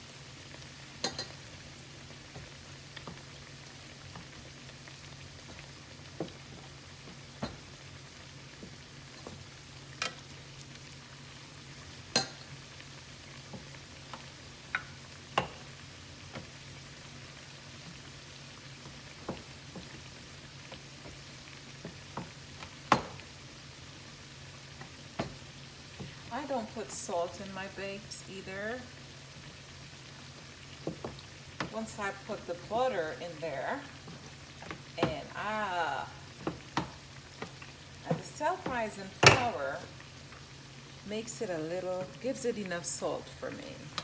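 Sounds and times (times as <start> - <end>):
dough frying in oil: 0.0 - 44.0
oil popping: 29.3 - 40.9.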